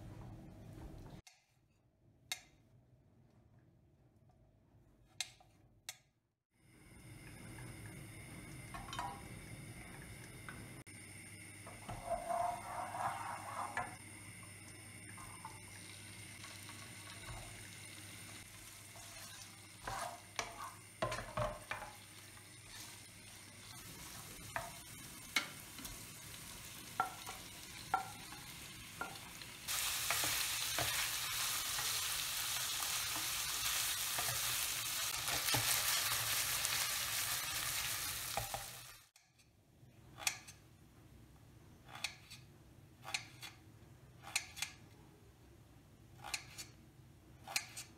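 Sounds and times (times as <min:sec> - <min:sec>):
food sizzling in a pan: 0:06.6 - 0:39.1.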